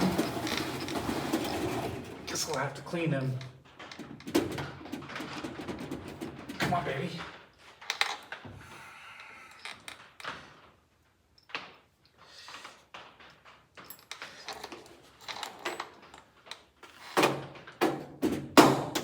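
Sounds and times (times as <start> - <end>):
loud sharp knocks: 17.8 - 19.0.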